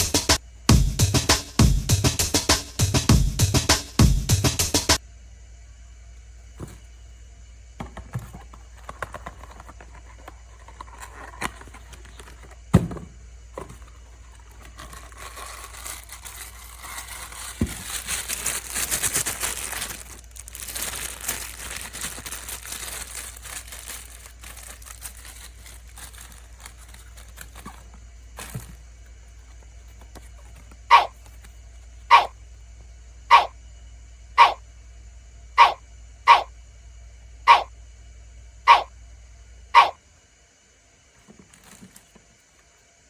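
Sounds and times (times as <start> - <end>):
packaging crinkling and rustling: 7.8 - 32.1, 41.2 - 42.7.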